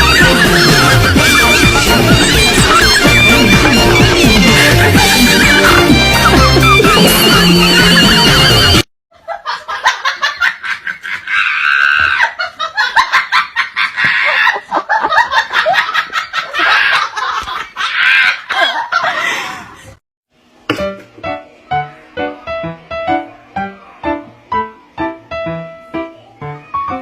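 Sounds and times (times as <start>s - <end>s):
music: 0.0s - 8.8s, 20.4s - 27.0s
people laughing and shrieking: 0.0s - 20.0s.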